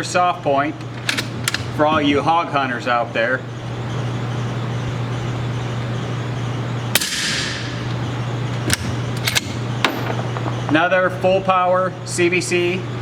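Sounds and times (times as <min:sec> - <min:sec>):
low hum: 0:03.4 - 0:12.2.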